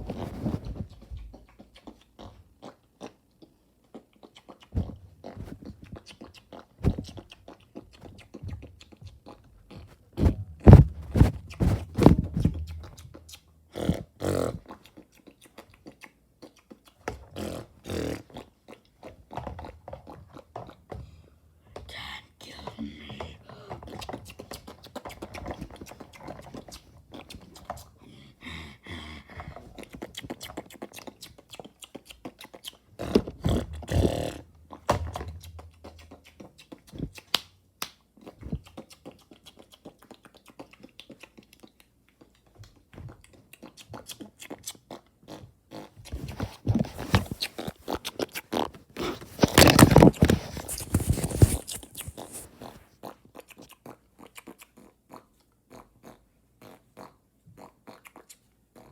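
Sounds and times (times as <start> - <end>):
wet mouth clicks and smacks: 29.8 - 32.8, 35.4 - 45.9, 53.3 - 55.4.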